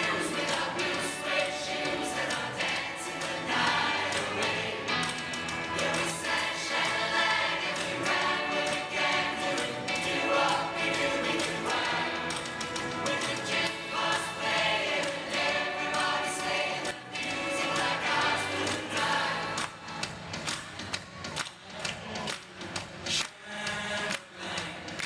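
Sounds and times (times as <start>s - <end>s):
choir singing: 0.0s - 20.0s
musical backing: 0.0s - 25.0s.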